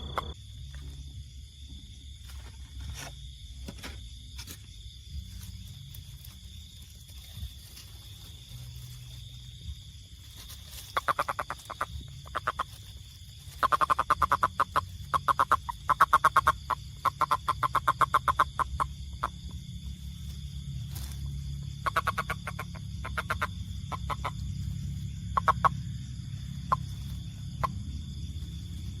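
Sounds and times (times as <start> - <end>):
frog clicking calls: 0.0 - 0.4, 10.7 - 19.6, 21.6 - 27.9
frog croaks: 0.0 - 0.9, 10.3 - 29.0.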